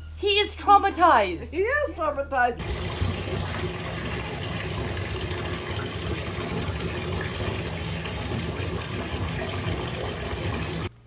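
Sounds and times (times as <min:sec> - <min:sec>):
running water rushing: 0:02.6 - 0:10.9.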